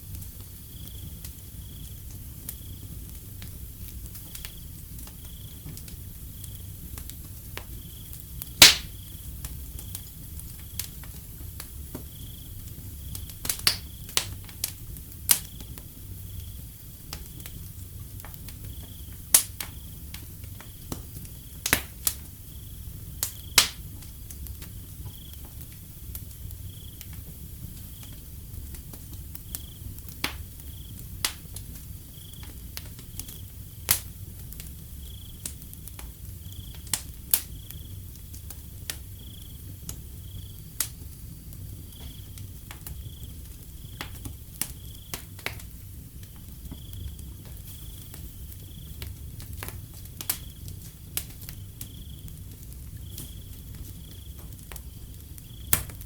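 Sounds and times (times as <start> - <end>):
wood fire crackling and popping: 0.0 - 56.0
cricket chirping: 0.1 - 56.0.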